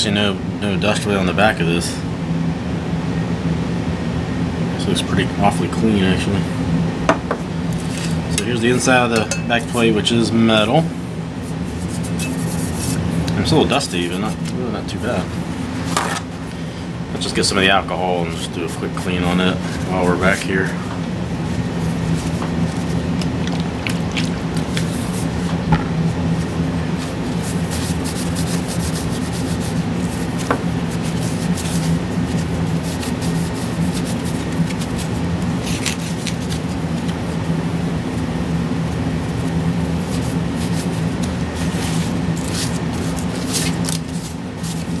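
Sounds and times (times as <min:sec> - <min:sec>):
low hum: 0:25.6 - 0:27.0.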